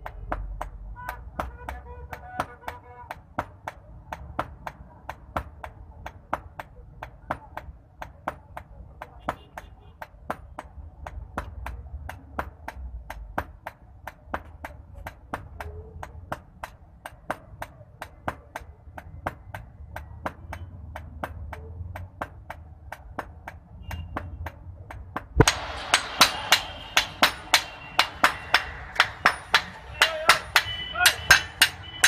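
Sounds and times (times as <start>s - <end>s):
hammer striking iron on anvil: 25.4s - 32.0s.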